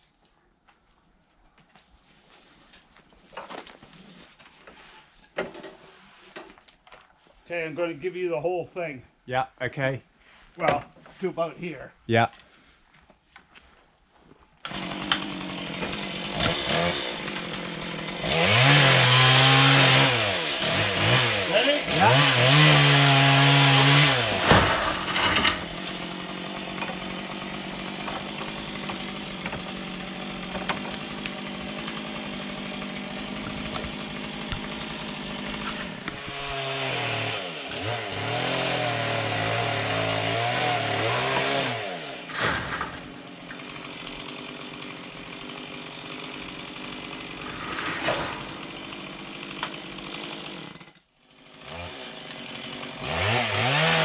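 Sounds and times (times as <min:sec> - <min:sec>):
chainsaw cutting a tree limb: 0:14.6 - 0:54.0.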